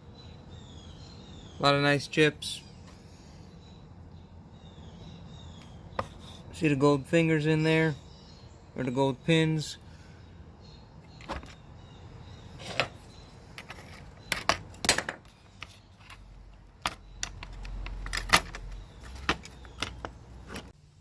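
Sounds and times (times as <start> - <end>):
clicks and clatter of phone parts: 13.6 - 20.7.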